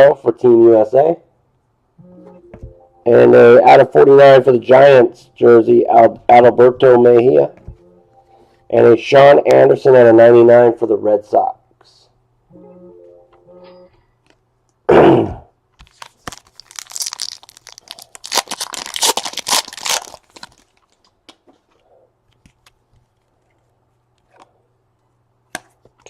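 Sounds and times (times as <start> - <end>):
wrapper tearing and crinkling: 15.9 - 21.1.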